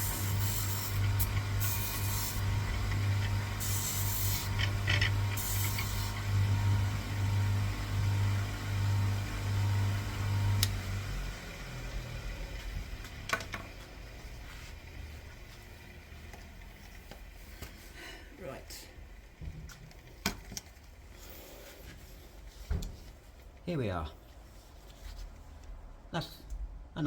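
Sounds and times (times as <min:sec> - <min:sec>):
metal rubbing on polishing wheel: 0:00.0 - 0:06.3
polishing wheel motor humming: 0:00.0 - 0:17.5.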